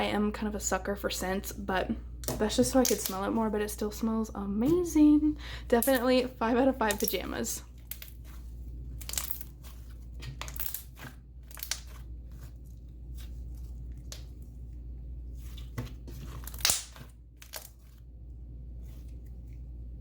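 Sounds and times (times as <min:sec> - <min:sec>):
slime being squished: 0:06.8 - 0:14.7.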